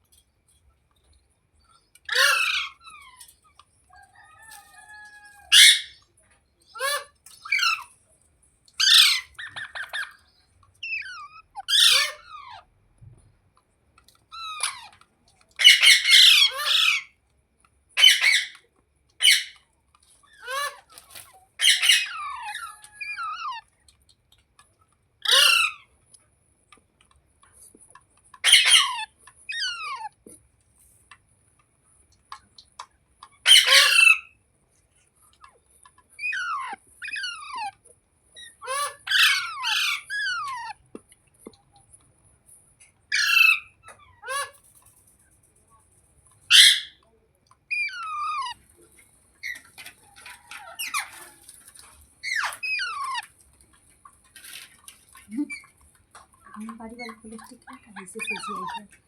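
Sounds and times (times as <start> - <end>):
parrot chirping: 1.7 - 3.3, 3.9 - 6.1, 6.7 - 8.0, 8.8 - 12.7, 14.3 - 17.1, 18.0 - 18.6, 19.2 - 19.6, 20.2 - 23.7, 25.2 - 25.9, 28.4 - 30.3, 33.3 - 34.4, 35.4 - 40.9, 43.1 - 44.6, 46.4 - 47.0, 47.6 - 53.4, 54.3 - 59.0
parrot screeching: 2.1 - 3.3, 4.2 - 6.0, 6.8 - 7.9, 8.8 - 10.2, 10.8 - 12.6, 14.3 - 15.0, 15.6 - 17.1, 18.0 - 18.6, 19.2 - 19.6, 20.3 - 23.6, 25.2 - 25.8, 28.4 - 30.2, 33.4 - 34.3, 36.2 - 37.8, 38.4 - 40.8, 43.1 - 44.6, 46.5 - 47.0, 47.7 - 48.6, 49.4 - 53.3, 58.2 - 58.9.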